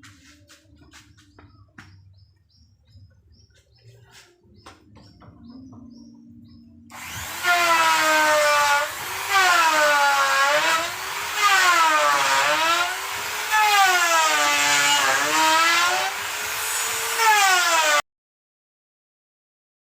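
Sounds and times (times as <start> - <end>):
router motor running: 6.9 - 18.0.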